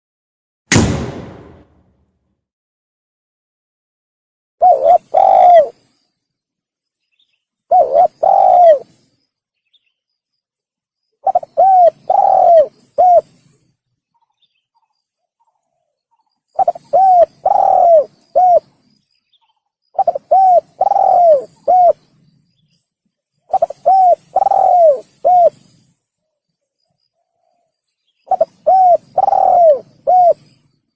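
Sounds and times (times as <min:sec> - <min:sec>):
dove cooing: 0:04.6 - 0:05.8, 0:07.7 - 0:08.9, 0:11.2 - 0:13.3, 0:16.6 - 0:18.7, 0:20.0 - 0:22.0, 0:23.5 - 0:25.6, 0:28.3 - 0:30.5.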